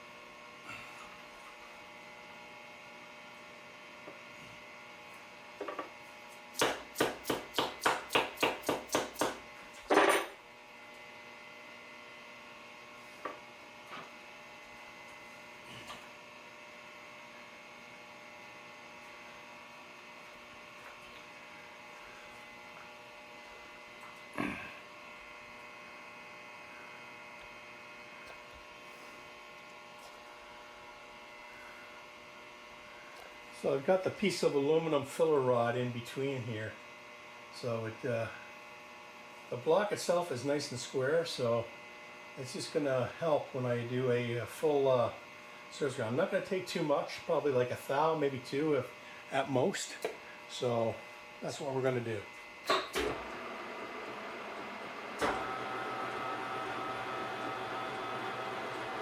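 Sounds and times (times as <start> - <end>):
electrical hum: 0.0 - 59.0
hammer tapping: 6.6 - 9.4.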